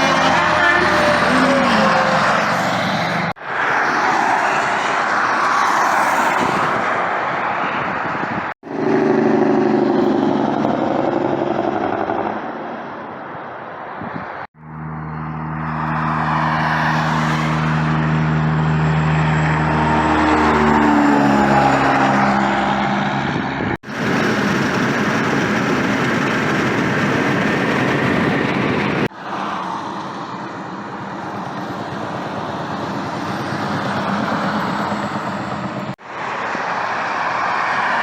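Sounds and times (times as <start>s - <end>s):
highway traffic passing: 0.0s - 38.0s
steady engine drone: 8.6s - 13.4s, 14.5s - 38.0s.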